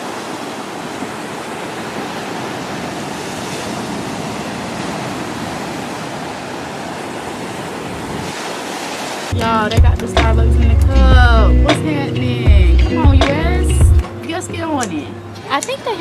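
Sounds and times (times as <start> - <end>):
sea surf washing onto beach: 0.0 - 9.6.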